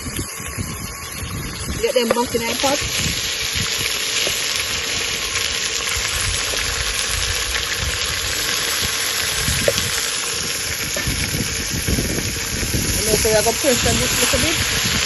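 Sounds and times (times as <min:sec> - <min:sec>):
food sizzling in a pot: 0:00.0 - 0:15.0.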